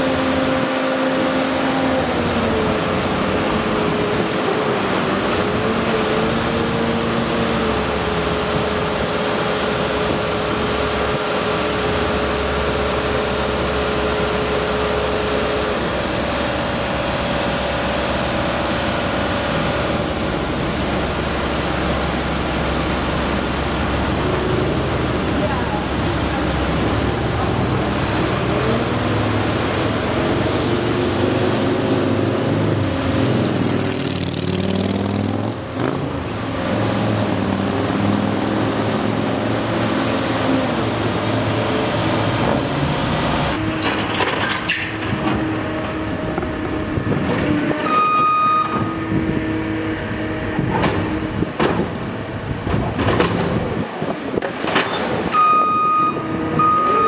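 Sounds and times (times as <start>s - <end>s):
heavy machine engine running: 0.0s - 57.0s
backup alarm beeping: 47.8s - 48.9s, 55.3s - 57.0s.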